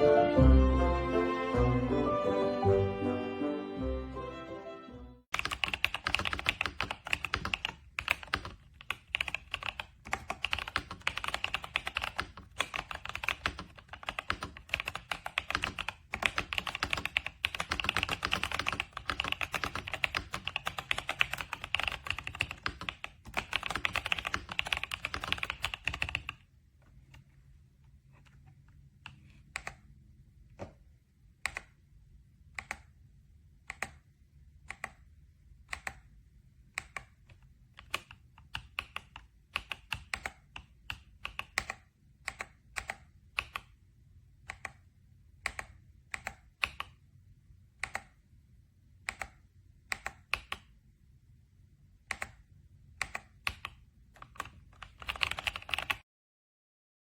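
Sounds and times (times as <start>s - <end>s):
mechanical keyboard typing: 5.4s - 26.5s, 29.0s - 29.9s, 31.4s - 31.8s, 32.6s - 33.0s, 33.6s - 43.8s, 44.4s - 47.0s, 47.8s - 48.2s, 49.0s - 50.8s, 52.0s - 56.0s.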